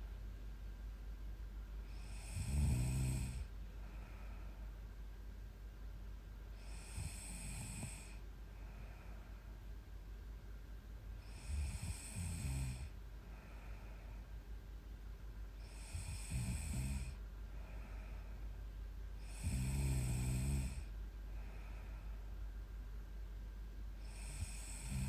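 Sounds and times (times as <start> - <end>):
quiet breathing: 1.6 - 25.0
woman snoring: 1.9 - 3.5, 6.6 - 8.2, 11.2 - 13.0, 15.6 - 17.2, 19.2 - 20.9, 24.0 - 25.0.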